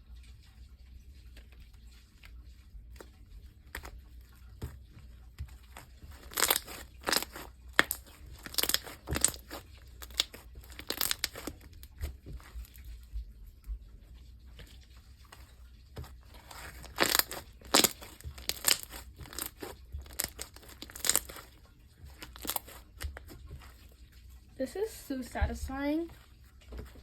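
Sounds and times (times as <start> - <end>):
slime crackling and popping: 5.4 - 12.8, 15.3 - 23.7.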